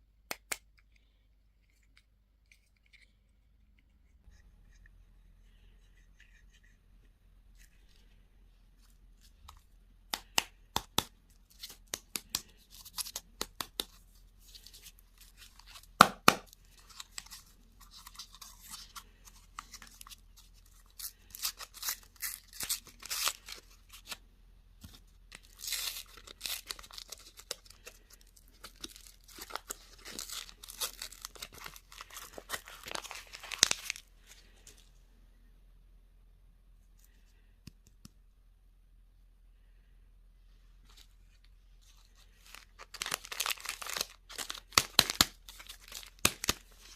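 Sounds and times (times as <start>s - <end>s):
candy wrapper crinkling and tearing: 9.5s - 24.2s, 25.0s - 34.8s, 41.9s - 46.9s.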